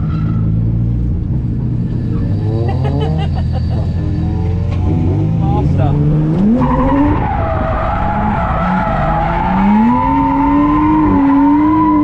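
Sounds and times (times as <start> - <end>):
tyres skidding: 0.0 - 12.0
car engine revving hard: 4.8 - 12.0.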